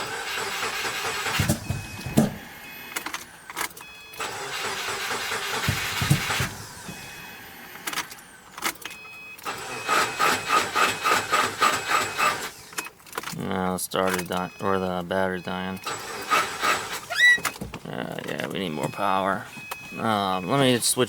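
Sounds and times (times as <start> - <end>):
car engine cranking without firing: 0.0 - 14.8, 15.5 - 19.8.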